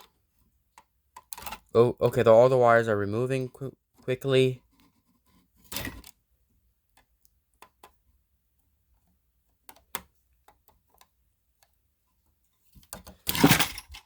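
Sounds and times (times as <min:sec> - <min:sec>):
plastic and metal parts clicking: 0:00.7 - 0:01.7.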